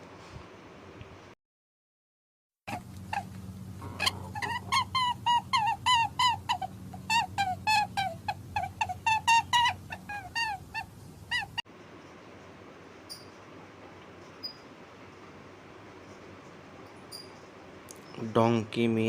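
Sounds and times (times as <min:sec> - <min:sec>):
squeaky animal calls: 0:02.7 - 0:11.6.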